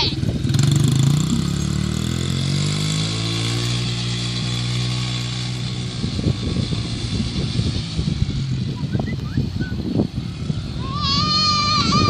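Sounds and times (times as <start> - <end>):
dirt bike engine revving down: 0.0 - 12.0
dirt bike engine idling: 6.0 - 12.0.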